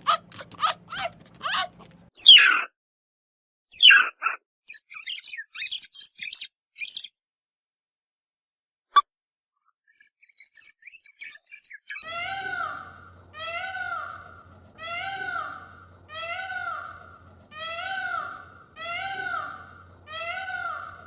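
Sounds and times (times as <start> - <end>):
kitten meowing: 0.0 - 2.0
low steady hum: 12.0 - 21.0.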